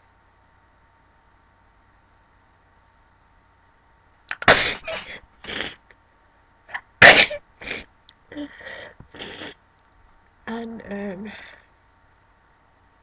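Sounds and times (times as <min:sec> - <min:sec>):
person sneezing: 0:04.3 - 0:05.8, 0:06.7 - 0:07.9, 0:09.1 - 0:09.6.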